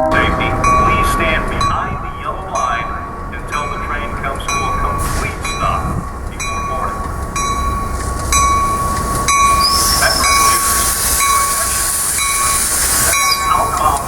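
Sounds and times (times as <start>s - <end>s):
hissing noise: 0.0s - 14.0s
train running: 0.0s - 14.0s.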